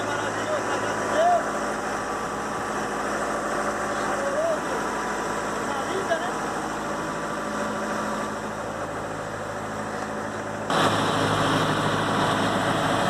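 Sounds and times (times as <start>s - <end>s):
boat engine running: 0.0s - 13.0s.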